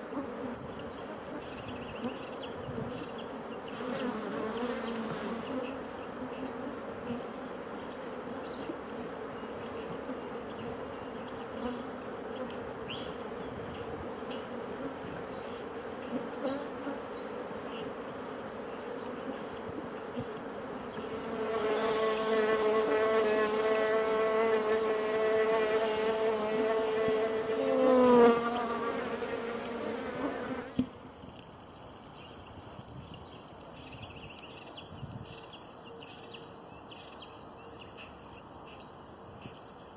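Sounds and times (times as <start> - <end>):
flying insect buzzing: 0.0 - 31.1.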